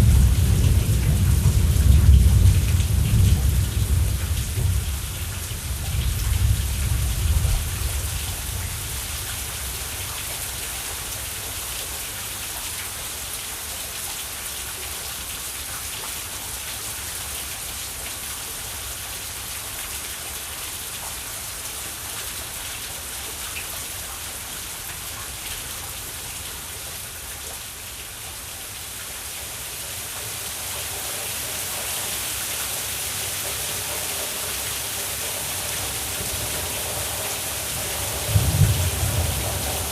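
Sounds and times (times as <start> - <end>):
thunder rumble: 0.0 - 9.1, 35.8 - 39.9
steady rain falling: 0.0 - 39.9.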